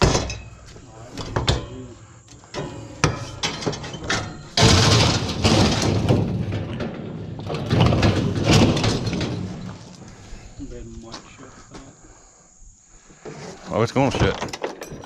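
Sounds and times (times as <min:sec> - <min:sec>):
metal scraping against metal: 0:00.0 - 0:10.4
metal knocks: 0:02.5 - 0:09.9.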